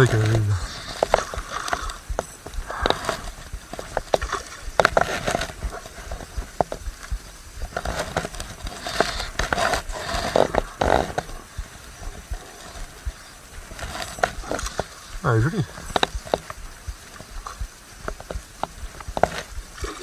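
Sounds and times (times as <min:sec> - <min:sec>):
handling clicks and scrapes: 0:00.0 - 0:15.1.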